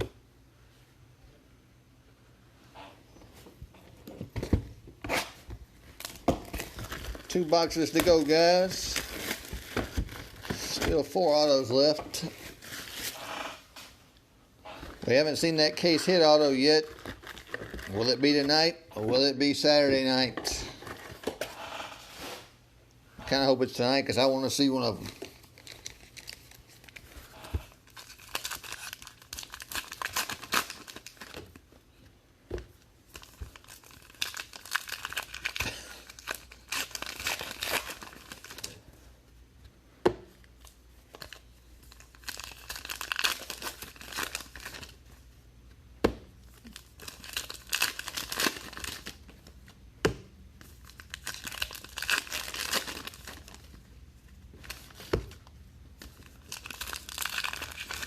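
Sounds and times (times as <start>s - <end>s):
foil wrappers tearing and crinkling: 12.2s - 13.6s, 25.3s - 31.5s, 33.1s - 38.8s, 41.2s - 45.0s, 46.5s - 49.2s, 50.6s - 53.8s, 56.0s - 58.0s.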